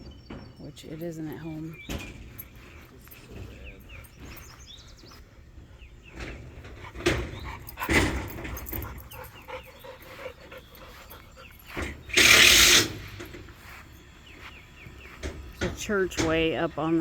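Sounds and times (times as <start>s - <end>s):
quiet rural background: 0.0s - 17.0s
dog: 6.7s - 12.4s.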